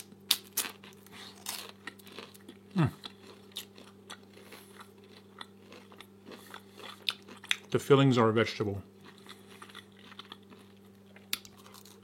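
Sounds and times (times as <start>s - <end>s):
crunchy chewing: 0.0s - 7.7s, 8.9s - 12.0s
person humming mm: 2.8s - 3.0s.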